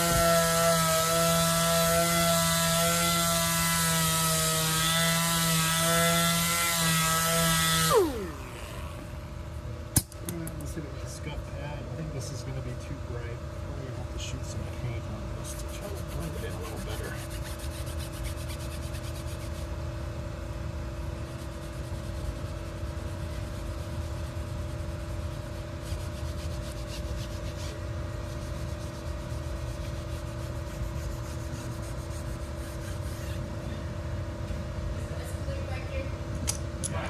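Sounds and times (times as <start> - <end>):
sandpaper rubbing on metal wheel: 0.0 - 8.0, 15.4 - 19.8, 21.0 - 33.5
steady machine hum: 0.0 - 37.0.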